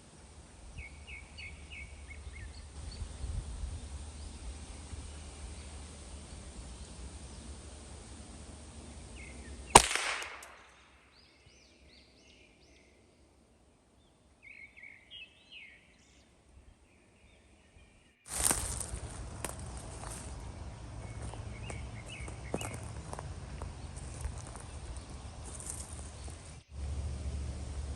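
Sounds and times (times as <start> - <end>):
birds chirping: 0.0 - 27.9
rifle shot with echo: 9.7 - 10.9.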